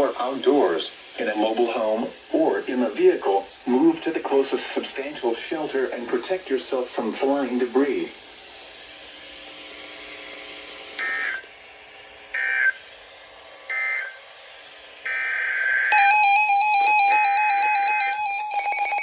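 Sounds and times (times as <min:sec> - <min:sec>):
longer data burst: 0:11.0 - 0:11.5, 0:15.0 - 0:19.0
steady electronic tone: 0:15.0 - 0:19.0
shrill warbling data bursts: 0:15.1 - 0:19.0.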